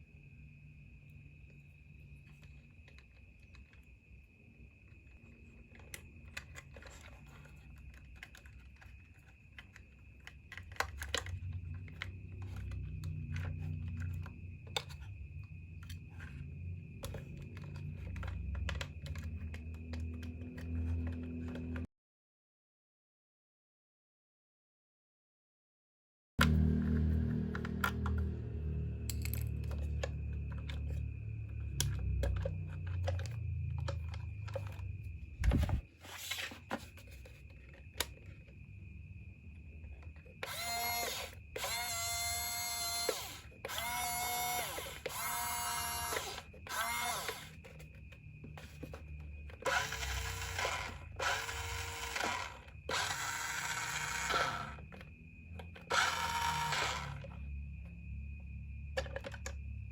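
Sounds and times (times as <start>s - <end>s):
handling noise: 31.8s - 38.6s
small electric motors whirring: 40.4s - 47.8s, 49.5s - 57.4s.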